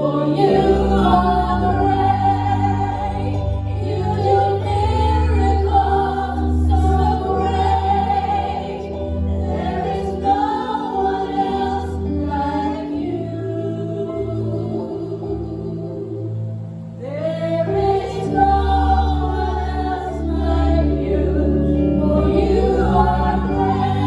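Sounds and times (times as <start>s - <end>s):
choir singing: 0.0s - 24.0s.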